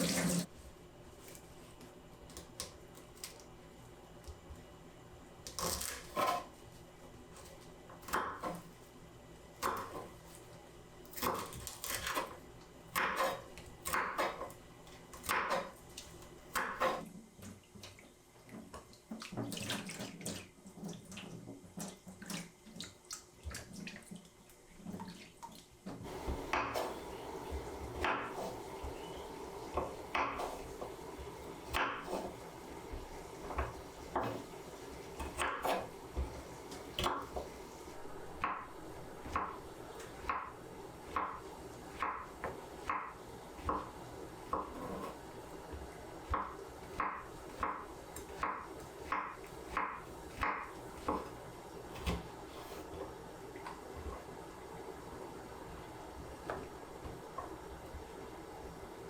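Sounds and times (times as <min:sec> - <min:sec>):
tap water running into sink: 0:00.0 - 0:00.5.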